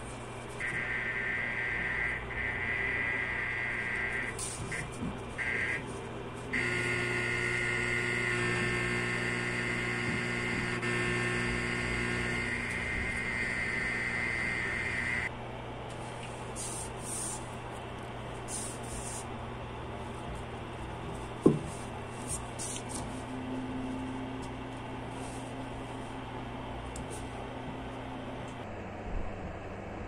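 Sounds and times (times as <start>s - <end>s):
electrical hum: 0.0s - 30.0s
speaker buzz: 0.6s - 15.3s.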